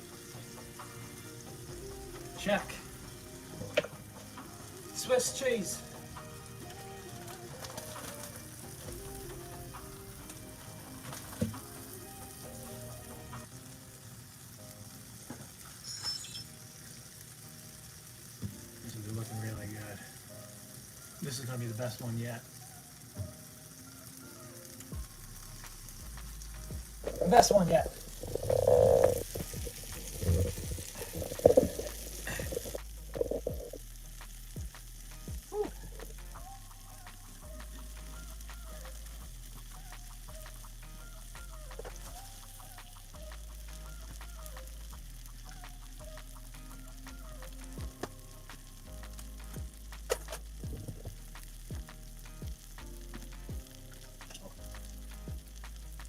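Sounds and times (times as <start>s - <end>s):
sandwich sizzling in a pan: 0.0s - 56.0s
low thumps dropping in pitch: 26.7s - 33.8s, 50.6s - 52.6s.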